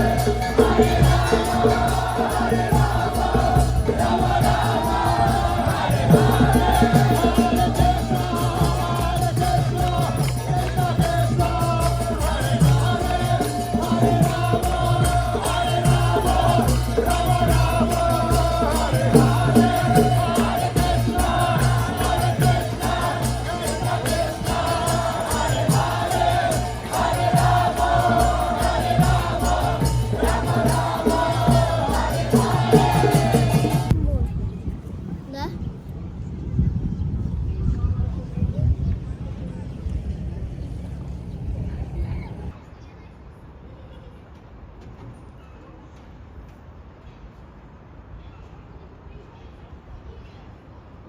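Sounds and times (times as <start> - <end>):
steady low beat: 0.0 - 33.9
choir-like vocals: 0.0 - 34.0.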